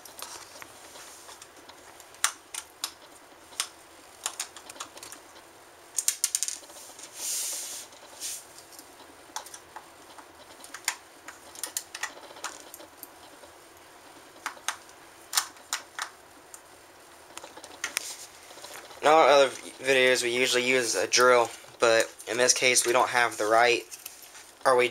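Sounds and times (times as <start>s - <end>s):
scraping hiss: 6.6s - 8.7s.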